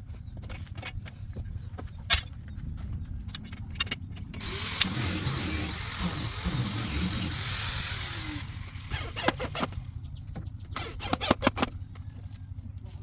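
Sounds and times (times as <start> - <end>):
motor running: 4.4 - 10.2.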